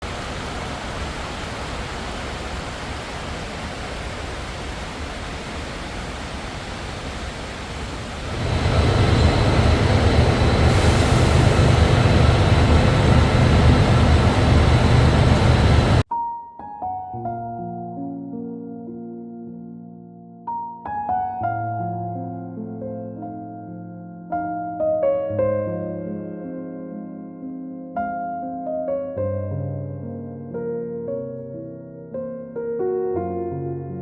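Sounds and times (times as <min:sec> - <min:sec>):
faint high whine: 0:04.6 - 0:16.0
train running noise inside carriage: 0:06.8 - 0:16.0
high squeal: 0:08.2 - 0:16.0.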